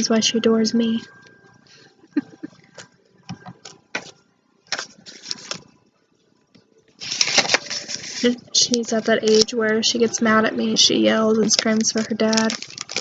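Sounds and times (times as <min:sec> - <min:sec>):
packaging rustling: 0:03.5 - 0:05.8, 0:07.0 - 0:09.5, 0:11.4 - 0:13.0.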